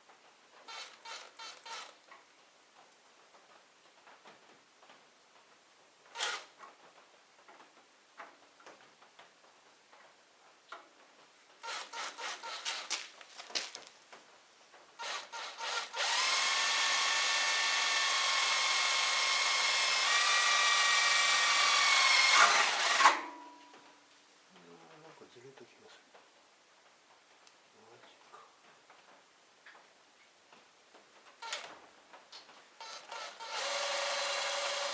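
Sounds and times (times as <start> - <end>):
power drill motor whine: 0.7 - 2.0, 6.2 - 6.5, 11.6 - 12.9, 15.0 - 23.4, 32.8 - 34.9.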